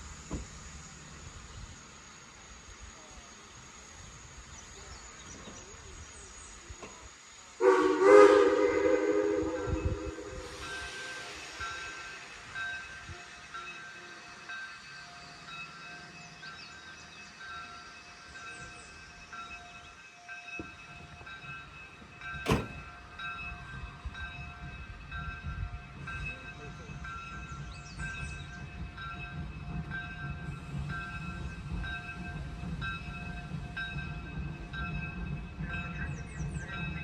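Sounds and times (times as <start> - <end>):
train rumbling: 0.0 - 37.0
locomotive bell ringing: 11.6 - 37.0.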